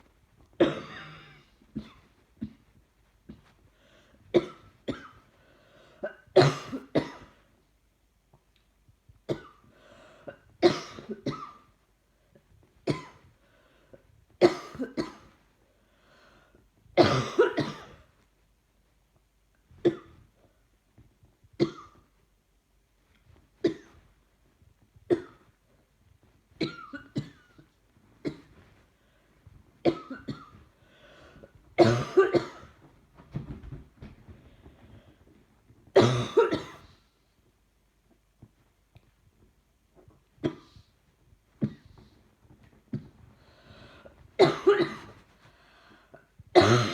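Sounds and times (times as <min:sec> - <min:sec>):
person coughing: 0:00.6 - 0:02.6, 0:06.0 - 0:07.4, 0:17.0 - 0:18.0, 0:31.8 - 0:32.8, 0:36.0 - 0:37.0, 0:44.4 - 0:45.2, 0:46.6 - 0:46.9.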